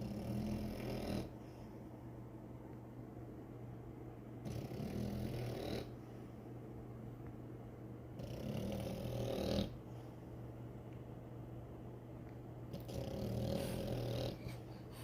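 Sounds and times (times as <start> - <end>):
dog snoring: 0.0 - 1.4, 4.4 - 6.0, 8.2 - 9.8, 12.7 - 14.8
dog breathing: 12.8 - 15.0.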